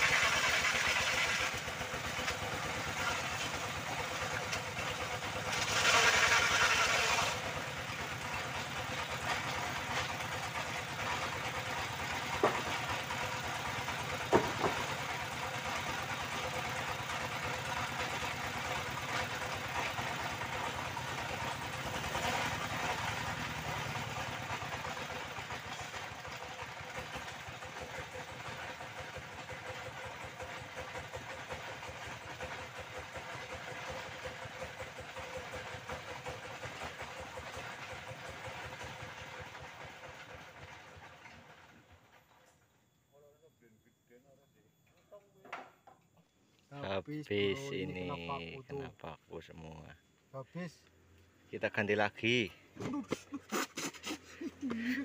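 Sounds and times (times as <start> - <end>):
disc saw cutting timber: 0.0 - 15.1.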